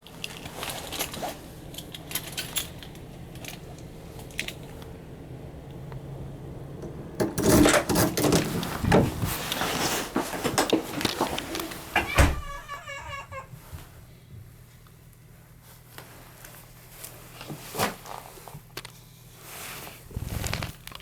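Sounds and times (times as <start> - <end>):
clattering and rustling: 0.0 - 4.8, 6.8 - 14.0
steady low hum: 0.1 - 11.0
keys jangling: 0.2 - 4.7.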